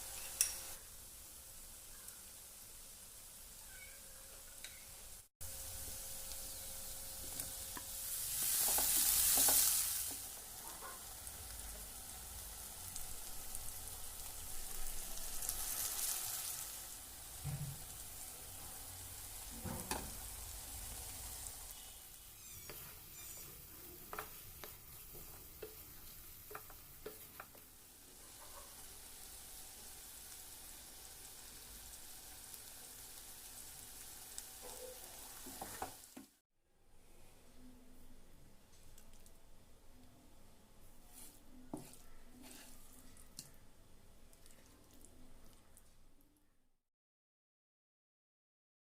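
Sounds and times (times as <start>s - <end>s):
prawns sizzling in oil: 0.0s - 36.4s, 41.1s - 43.6s
spatula scraping pan: 21.7s - 27.6s, 41.1s - 43.2s.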